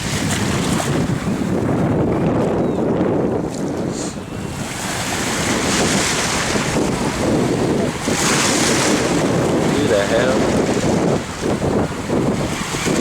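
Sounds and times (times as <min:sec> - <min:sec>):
wind buffeting microphone: 0:00.0 - 0:13.0
breaking surf: 0:03.4 - 0:13.0.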